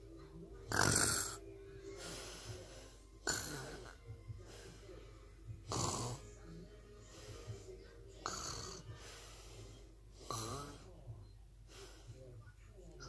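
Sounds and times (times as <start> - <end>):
quiet breathing: 0.0 - 13.0
person snoring: 0.7 - 1.4, 3.2 - 4.0, 5.6 - 6.4, 8.2 - 9.3, 10.2 - 10.9.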